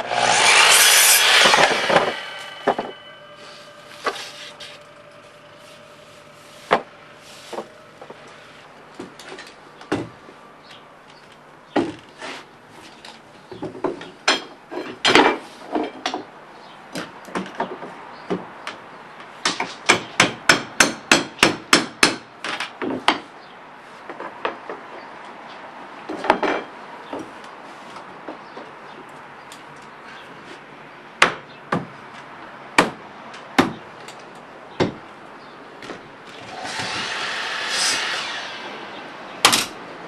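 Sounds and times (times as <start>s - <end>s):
hammer striking wood: 19.5s - 22.2s, 33.6s - 33.8s.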